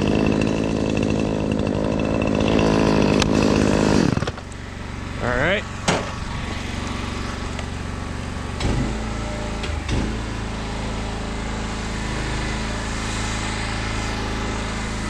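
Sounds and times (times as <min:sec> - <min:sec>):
small engine running: 0:00.0 - 0:15.0.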